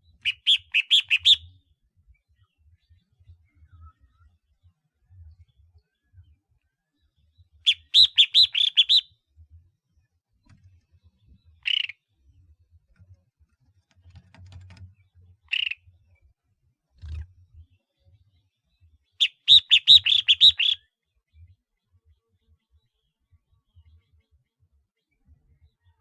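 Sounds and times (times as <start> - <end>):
bird chirping: 0.1 - 1.5, 7.1 - 9.1, 11.2 - 12.0, 15.0 - 16.0, 17.8 - 21.5.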